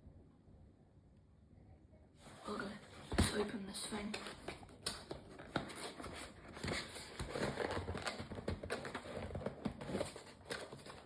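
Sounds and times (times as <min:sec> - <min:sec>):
packaging rustling: 0:04.1 - 0:11.0.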